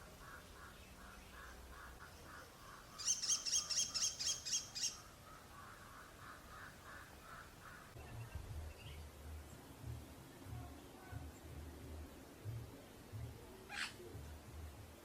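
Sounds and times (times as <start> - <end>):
faint lower bird chirping: 0.1 - 9.1.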